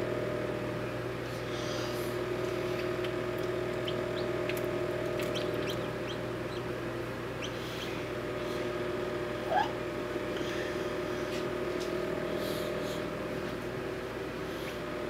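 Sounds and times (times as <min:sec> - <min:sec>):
low electrical hum: 0:00.0 - 0:15.0
chick peeping: 0:02.7 - 0:06.7, 0:07.4 - 0:08.0.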